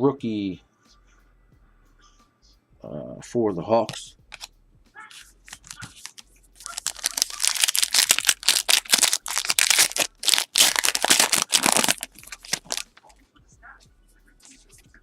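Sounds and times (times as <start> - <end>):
foil wrapper crinkling and tearing: 5.5 - 13.1.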